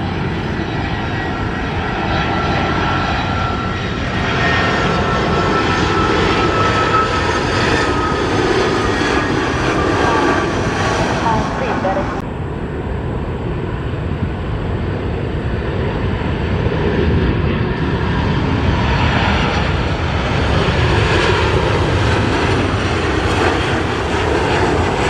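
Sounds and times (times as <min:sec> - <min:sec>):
jet engine rushing: 0:00.0 - 0:25.0.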